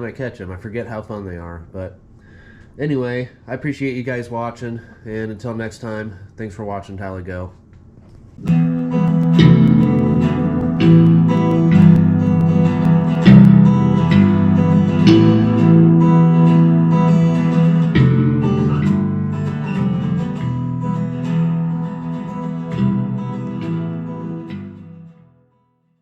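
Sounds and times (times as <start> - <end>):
guitar strumming chords: 8.4 - 25.2.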